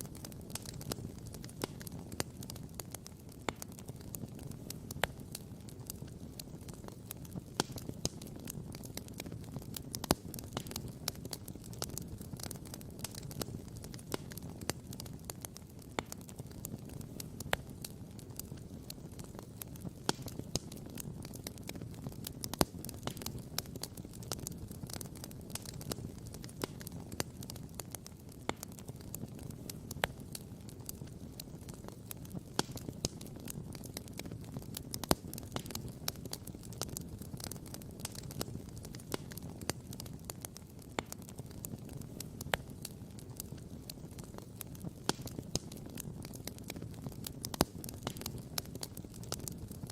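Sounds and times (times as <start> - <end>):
sharp pops of fire: 0.0 - 49.9
wood campfire crackling: 0.0 - 49.9.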